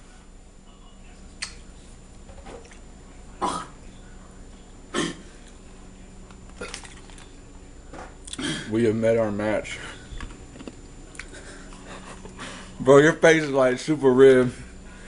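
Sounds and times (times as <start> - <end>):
person clearing throat: 3.4 - 3.8, 4.9 - 5.3, 8.3 - 8.7
person coughing: 3.4 - 3.8, 4.9 - 5.3, 8.4 - 8.7.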